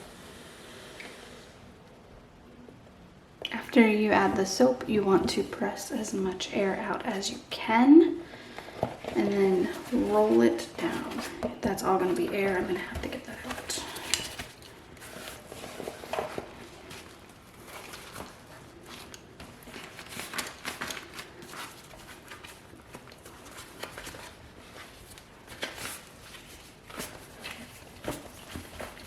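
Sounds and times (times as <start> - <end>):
dry bag rustling and crinkling: 8.3 - 29.0.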